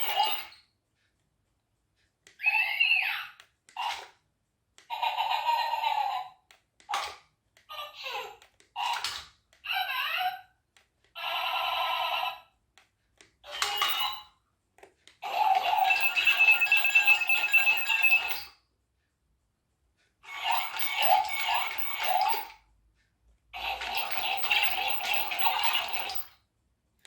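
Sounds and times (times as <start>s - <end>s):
toy robot electronic bleeps: 13.5s - 14.2s, 15.3s - 18.5s, 20.3s - 22.5s.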